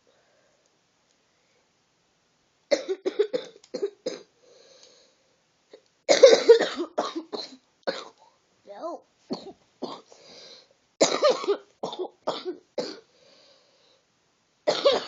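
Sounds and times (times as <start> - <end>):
faint breath in: 0.0 - 0.7, 4.3 - 5.4, 10.1 - 10.8, 13.1 - 14.1
person coughing: 6.1 - 8.3, 9.3 - 10.2, 11.0 - 13.1, 14.7 - 15.0.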